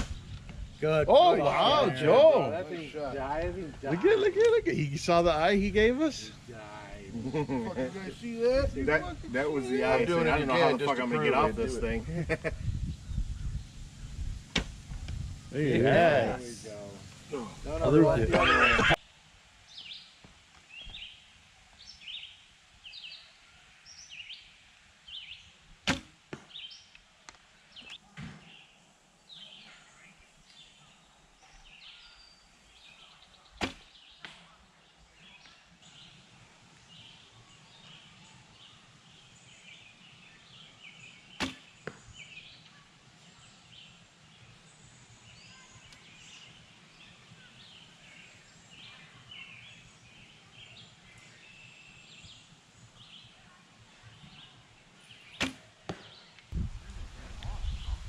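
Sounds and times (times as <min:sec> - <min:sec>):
arrow shots: 0:00.0 - 0:00.6, 0:14.5 - 0:14.9, 0:25.8 - 0:26.6, 0:33.6 - 0:34.4, 0:41.4 - 0:42.0, 0:55.3 - 0:56.2
small birds chirping: 0:00.0 - 0:19.0, 0:19.6 - 0:58.0.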